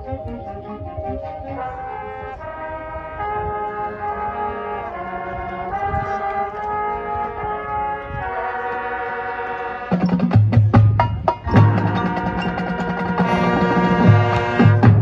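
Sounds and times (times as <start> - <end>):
brass chords: 0.0 - 15.0
low percussion: 9.9 - 15.0.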